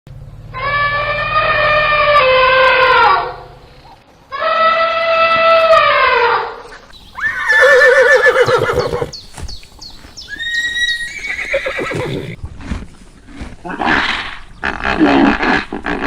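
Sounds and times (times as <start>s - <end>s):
horse whinnying: 7.1s - 9.2s, 10.1s - 12.4s.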